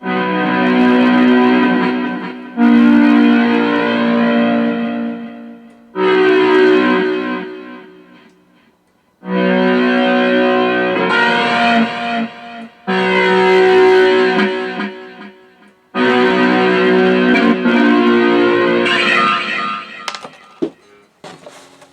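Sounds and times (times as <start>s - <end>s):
guitar chords with sweeping effect: 0.0s - 20.8s.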